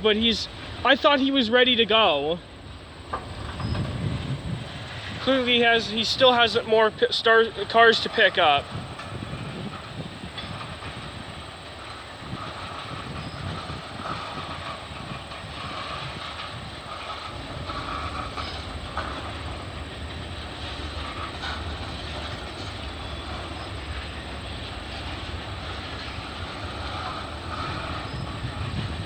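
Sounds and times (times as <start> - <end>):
freight train rumbling: 0.0 - 29.0
sharp knocks of train cars: 3.1 - 29.0.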